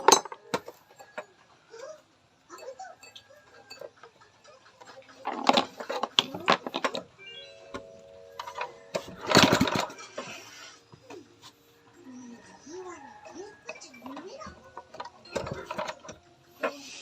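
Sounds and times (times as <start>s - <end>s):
small engine being cranked: 9.2s - 10.1s.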